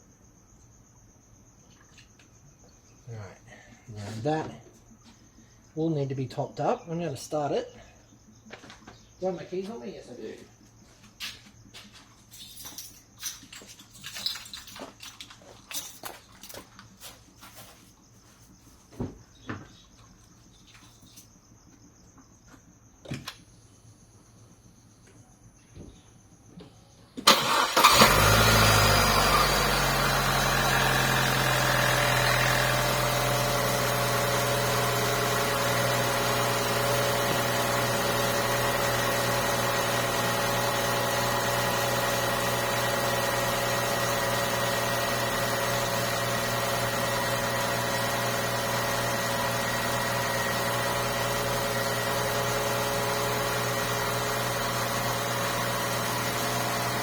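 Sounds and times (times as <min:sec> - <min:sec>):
car engine starting and idling: 0:27.2 - 0:57.0.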